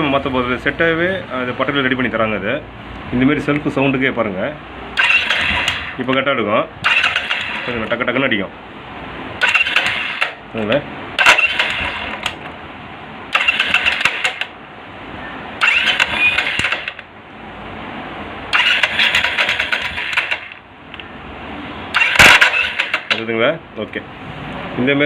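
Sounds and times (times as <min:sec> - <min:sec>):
motorcycle starter clattering: 0:05.0 - 0:08.1, 0:09.4 - 0:10.4, 0:11.2 - 0:12.6, 0:13.3 - 0:14.6, 0:15.6 - 0:17.1, 0:18.5 - 0:20.6, 0:21.9 - 0:23.4.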